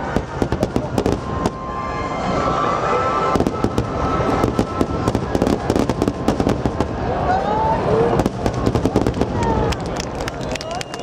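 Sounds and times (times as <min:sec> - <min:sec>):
firework crackles: 0:00.0 - 0:11.0
firework shells booming: 0:03.3 - 0:07.0.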